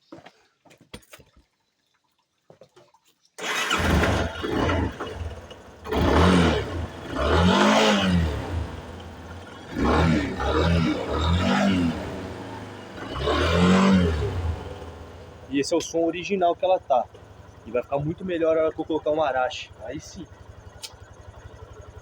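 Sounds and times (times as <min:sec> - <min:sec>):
motorcycle engine starting and revving: 0:03.4 - 0:22.0.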